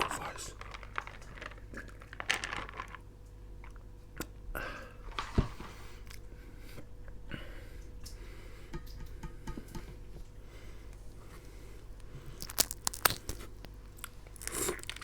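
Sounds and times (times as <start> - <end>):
chewing and biting food: 12.3 - 15.0.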